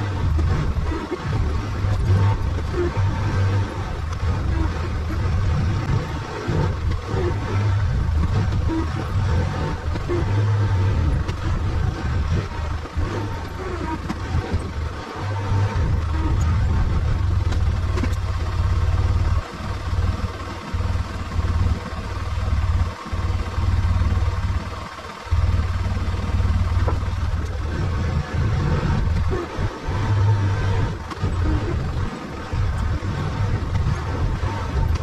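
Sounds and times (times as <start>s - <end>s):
vehicle engine rumbling: 0.0s - 35.0s.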